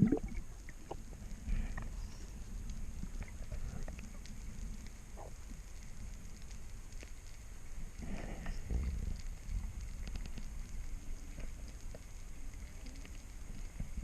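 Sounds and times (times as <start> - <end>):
water gurgling: 0.0 - 1.2
faint clicks and crackling: 0.0 - 14.0
underwater rumble: 0.0 - 14.0.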